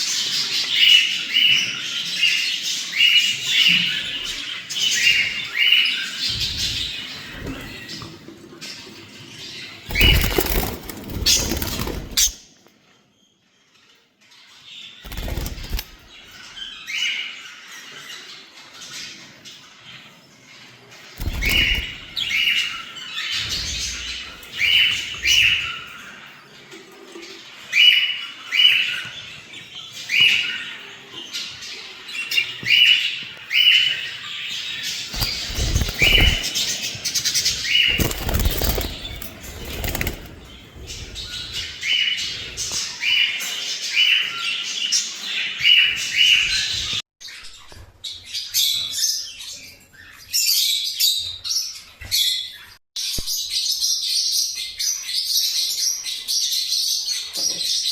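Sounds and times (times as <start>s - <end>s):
parrots chirping: 9.6s - 12.5s, 21.2s - 26.2s, 27.7s - 47.0s.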